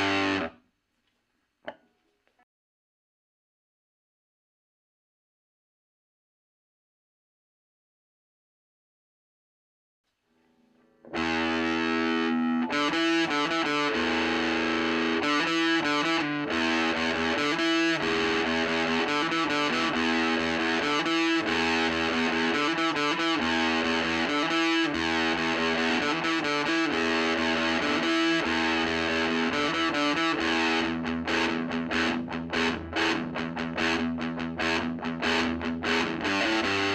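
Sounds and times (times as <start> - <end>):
distorted electric guitar: 0.0 - 0.6, 10.8 - 36.9.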